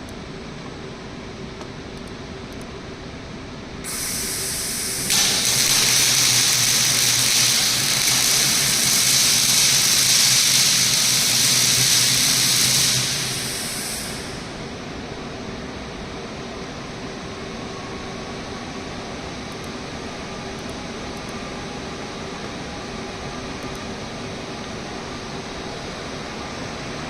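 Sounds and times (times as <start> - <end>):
welding arc hissing: 3.9 - 14.7.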